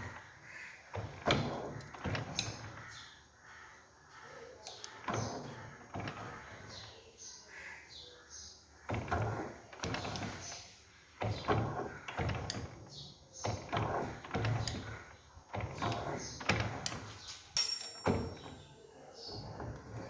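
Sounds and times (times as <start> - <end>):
metal parts knocking and clattering: 17.3 - 18.6.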